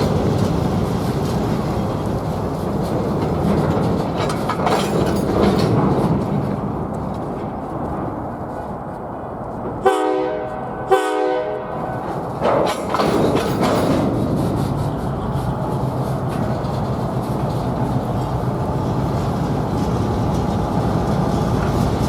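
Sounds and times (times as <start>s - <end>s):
train rumble and wheel clatter: 0.0s - 22.0s
locomotive air horn blasts: 9.8s - 12.2s.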